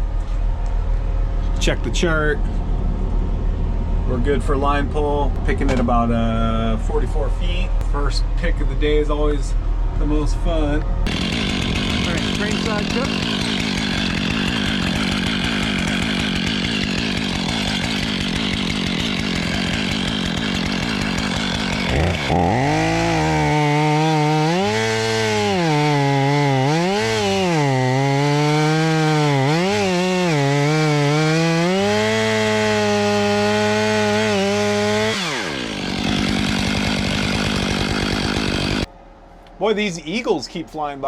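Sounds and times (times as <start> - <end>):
chainsaw cutting wood: 11.0 - 38.9.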